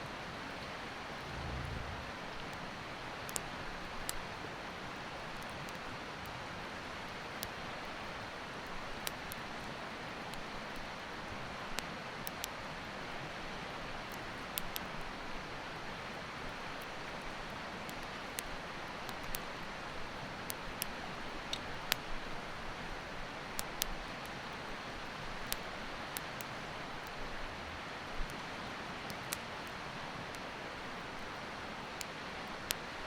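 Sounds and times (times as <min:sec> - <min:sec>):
campfire crackling: 0:00.4 - 0:11.1, 0:14.0 - 0:33.0
mountain river rushing: 0:00.9 - 0:02.9.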